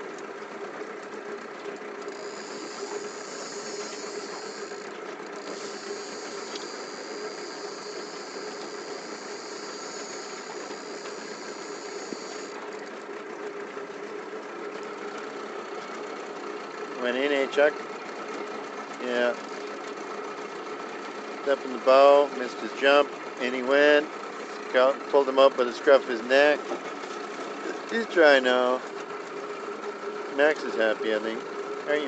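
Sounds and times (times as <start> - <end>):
outboard motor running: 0.0 - 32.0
high hiss: 2.2 - 4.8, 5.5 - 12.5.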